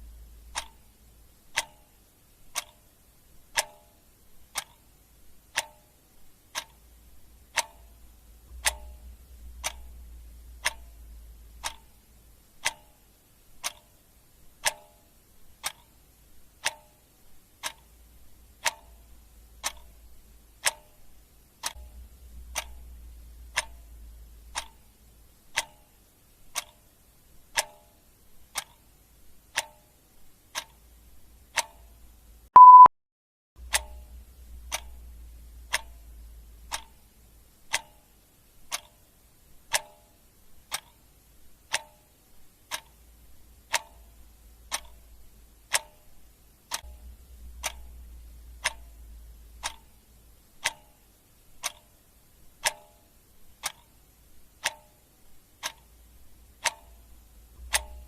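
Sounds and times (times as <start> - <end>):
clock ticking: 0.0 - 32.9, 33.6 - 58.0
short loud beep: 32.6 - 32.9.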